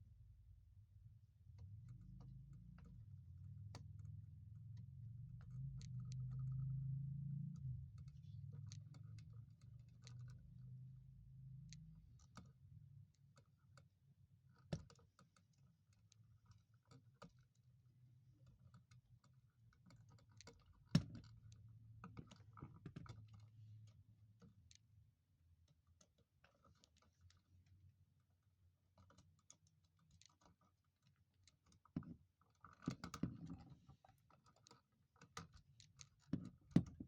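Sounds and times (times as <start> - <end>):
faint low hum: 0.0 - 14.5
small clicks and taps: 1.5 - 37.0.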